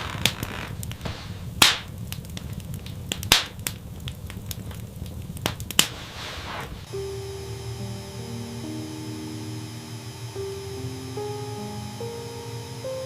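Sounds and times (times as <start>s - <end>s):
fire popping: 0.0s - 7.0s
wood fire crackling: 0.0s - 13.0s.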